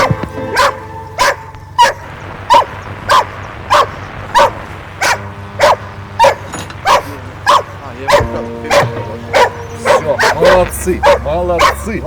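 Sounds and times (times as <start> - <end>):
dog barking: 0.0 - 11.9.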